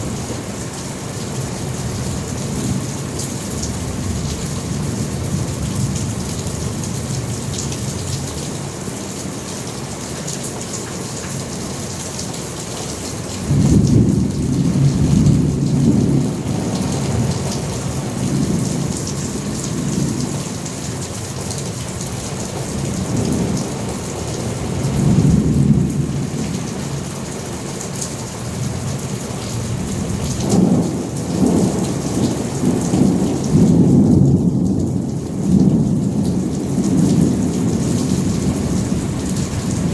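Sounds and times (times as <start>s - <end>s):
steady rain hissing: 0.0s - 39.9s
rolling thunder: 13.4s - 20.6s, 22.7s - 27.0s, 29.6s - 39.9s.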